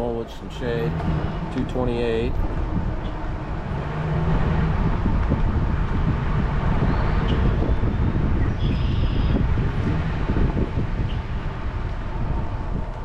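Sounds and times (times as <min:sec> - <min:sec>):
vehicle tyre rumble on road: 0:00.0 - 0:13.0.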